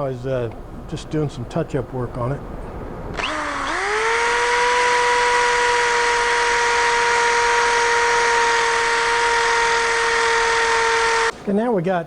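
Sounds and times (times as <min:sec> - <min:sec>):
power sander on plywood: 0:03.2 - 0:11.3.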